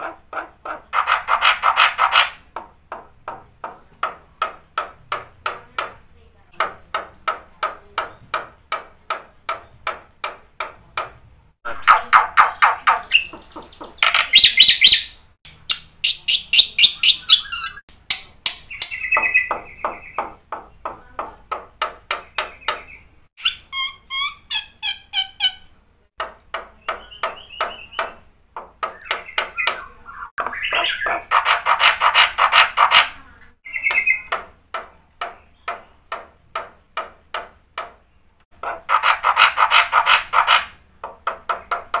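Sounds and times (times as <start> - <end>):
starling singing: 11.6 - 17.8, 18.6 - 21.3, 26.8 - 34.4.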